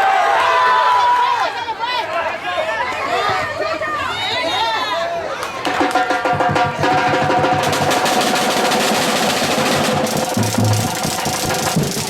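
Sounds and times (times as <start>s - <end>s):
fast dense drumming: 5.8s - 12.0s
held music notes: 6.0s - 12.0s.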